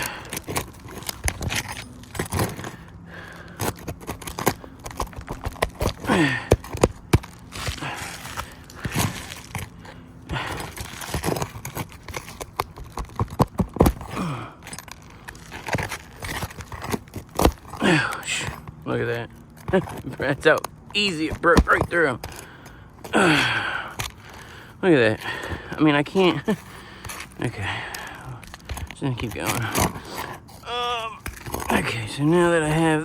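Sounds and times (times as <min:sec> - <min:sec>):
metal tool scraping under shingles: 0:00.0 - 0:18.8, 0:25.3 - 0:33.0.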